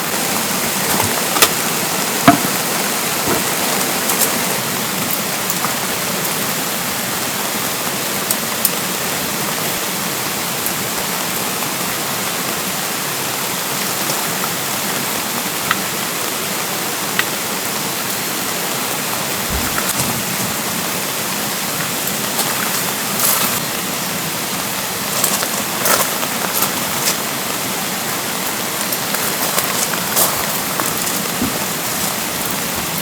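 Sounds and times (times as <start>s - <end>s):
raindrops tapping: 0.0s - 6.5s, 18.6s - 33.0s
mountain stream rushing: 0.0s - 33.0s
steady rain falling: 0.0s - 33.0s.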